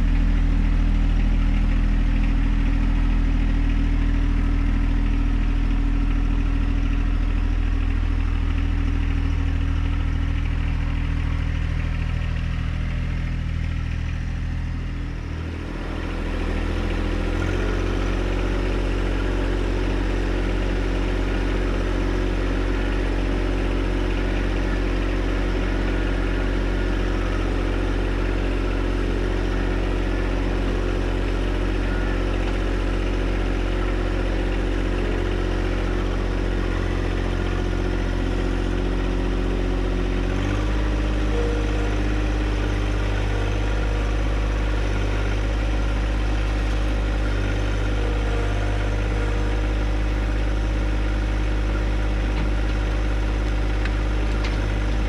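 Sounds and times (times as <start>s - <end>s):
tractor diesel engine running: 0.0s - 55.0s.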